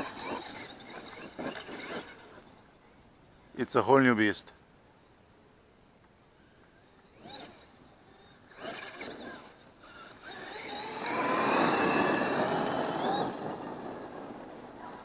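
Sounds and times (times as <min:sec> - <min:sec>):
electric motor whining: 0:00.0 - 0:02.6, 0:06.7 - 0:15.0.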